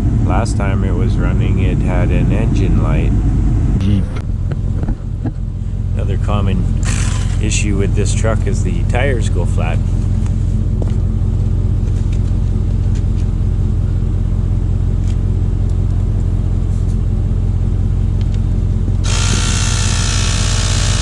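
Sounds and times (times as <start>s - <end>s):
car engine idling: 0.0s - 21.0s
tire inflator buzzing: 6.7s - 7.5s, 18.2s - 21.0s.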